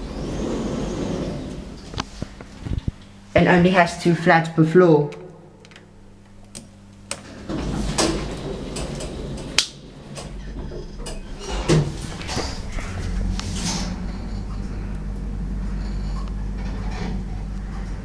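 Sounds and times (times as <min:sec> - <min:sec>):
sliding doors rumbling: 0:00.0 - 0:03.0, 0:07.1 - 0:18.0
lift machinery hum: 0:00.0 - 0:18.0.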